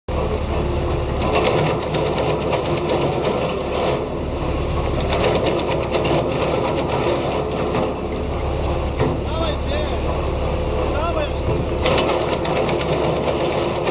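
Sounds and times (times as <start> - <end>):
wood chipper humming: 0.1 - 13.9
wood cracking in chipper: 1.2 - 9.4, 11.1 - 13.9.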